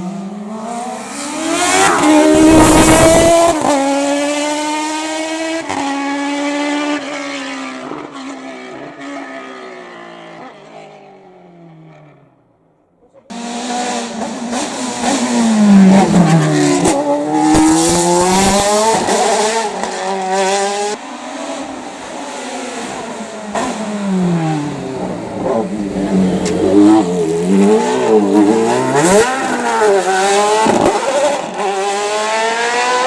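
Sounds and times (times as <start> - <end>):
race car engine at hard throttle: 0.0 - 33.0.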